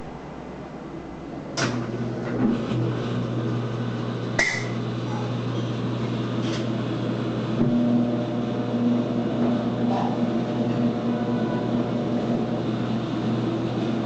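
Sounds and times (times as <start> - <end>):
washing machine spin motor hum: 0.0 - 14.0
higher hum: 7.4 - 14.0.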